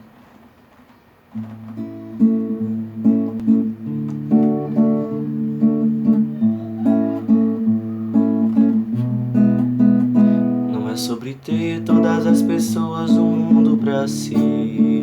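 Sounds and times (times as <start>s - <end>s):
acoustic guitar chords: 1.3s - 15.0s.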